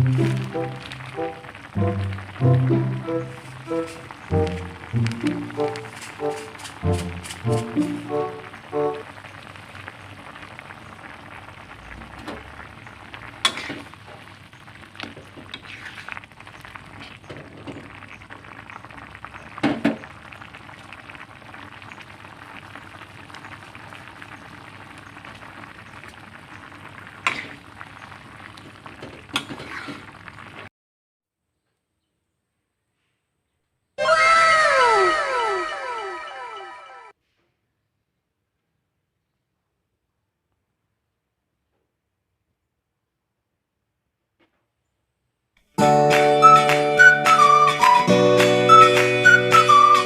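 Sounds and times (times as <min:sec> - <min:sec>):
pot simmering and bubbling: 0:00.0 - 0:30.7.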